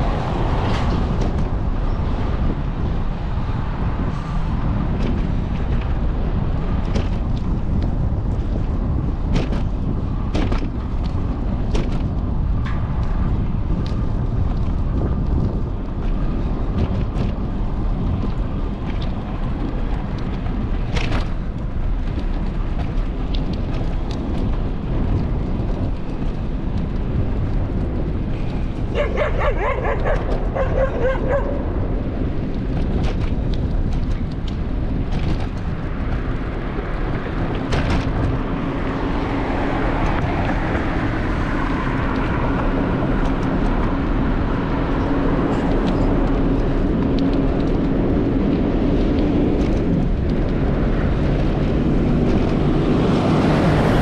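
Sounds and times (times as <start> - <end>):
wind and road rumble: 0.0 - 54.0
dog barking: 29.0 - 31.6.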